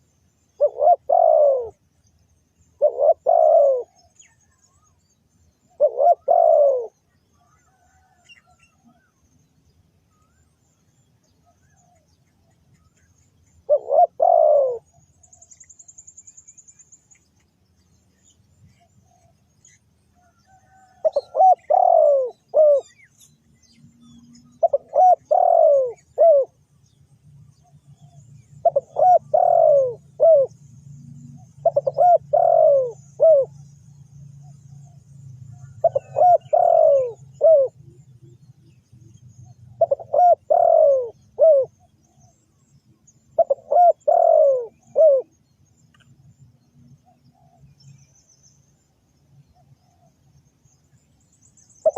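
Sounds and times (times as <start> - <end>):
dove cooing: 0.6 - 1.8, 2.8 - 4.2, 5.7 - 7.0, 13.6 - 15.0, 20.5 - 23.0, 24.1 - 26.6, 28.0 - 30.6, 31.2 - 33.6, 34.4 - 38.0, 39.6 - 42.2, 43.3 - 45.4.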